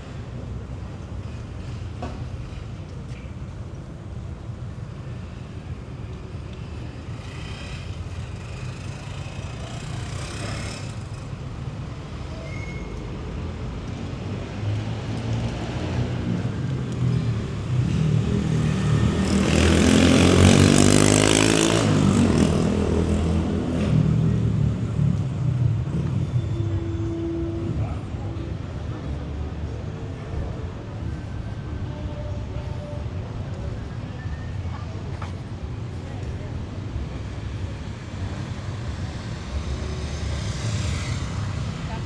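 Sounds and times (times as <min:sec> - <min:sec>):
street traffic hum: 0:00.0 - 0:42.0
vehicle passing close by: 0:17.2 - 0:26.4.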